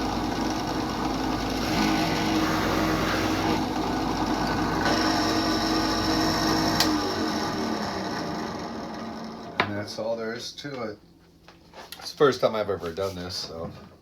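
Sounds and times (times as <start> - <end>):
electric drill drilling wood: 0.0 - 9.5.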